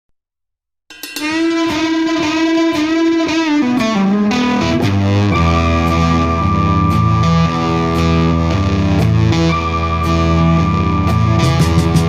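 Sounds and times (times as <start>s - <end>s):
electric guitar music: 0.9s - 12.0s
bass part: 4.2s - 12.0s.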